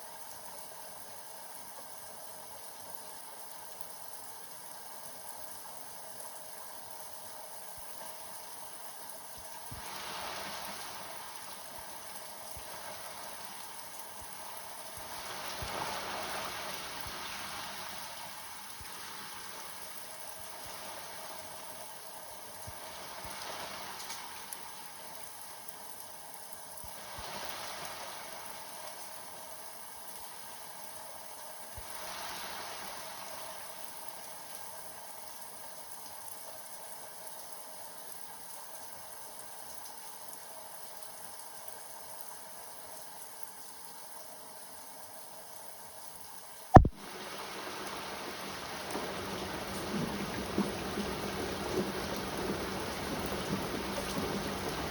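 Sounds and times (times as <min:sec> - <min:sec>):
steady rain falling: 0:00.0 - 0:54.9
sharp click: 0:46.8 - 0:47.0.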